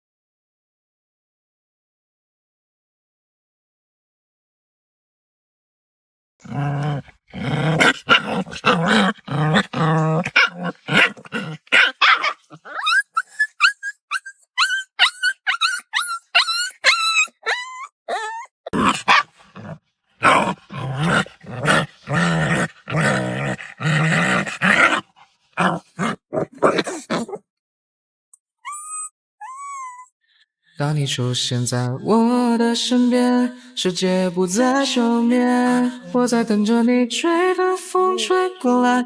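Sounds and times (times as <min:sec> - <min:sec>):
puppy growling and barking: 0:06.4 - 0:27.5, 0:28.7 - 0:30.1
puppy yelping: 0:07.8 - 0:25.0, 0:28.6 - 0:30.1.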